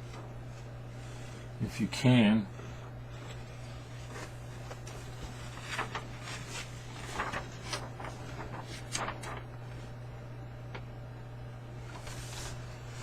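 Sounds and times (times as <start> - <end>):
low electrical hum: 0.0 - 13.0
paper crinkling and rustling: 3.1 - 10.0, 11.8 - 13.0.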